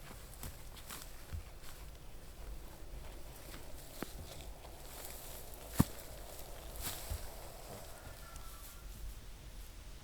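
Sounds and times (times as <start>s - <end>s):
soft footsteps on ground: 0.0s - 9.7s.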